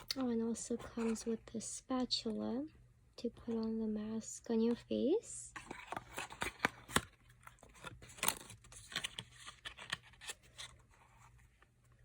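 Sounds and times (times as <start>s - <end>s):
packaging clicks taps and rustles: 5.6s - 10.7s.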